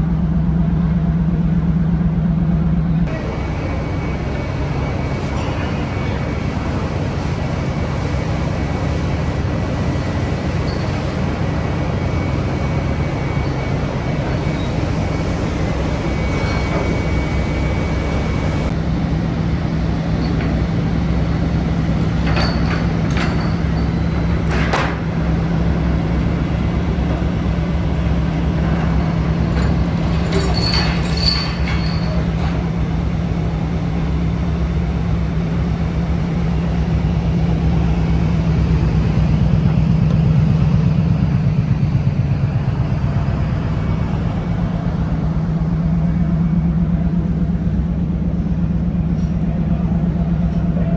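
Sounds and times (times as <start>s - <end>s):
trawler engine drone: 0.0s - 50.9s
metallic clanks and rattles: 22.1s - 25.1s, 28.6s - 32.8s.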